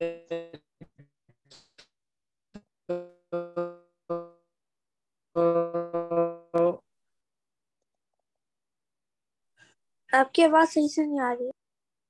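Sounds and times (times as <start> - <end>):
garbled voice on video call: 0.0 - 1.8, 6.6 - 6.8.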